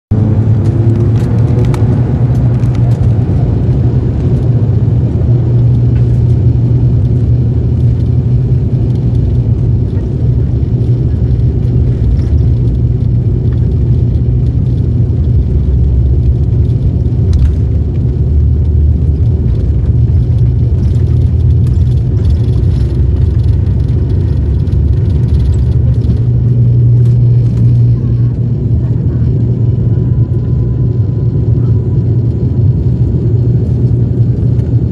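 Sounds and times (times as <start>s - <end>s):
airliner engines droning in cabin: 0.1s - 34.9s.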